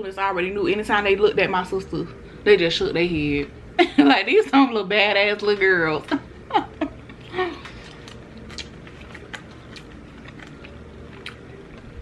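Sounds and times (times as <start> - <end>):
person chewing food: 7.0 - 12.0.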